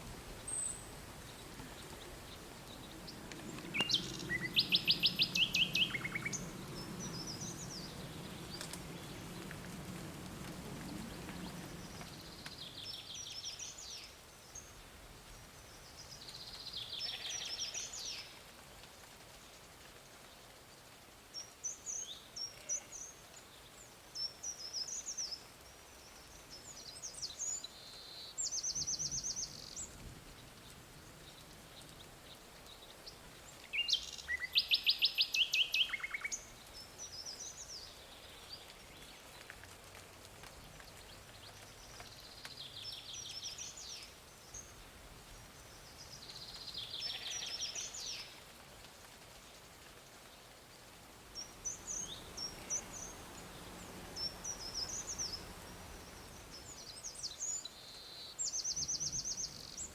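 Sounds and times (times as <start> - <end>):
songbirds singing and calling: 0.0 - 14.8, 15.5 - 18.4, 21.4 - 39.6, 40.4 - 48.5, 49.4 - 59.9.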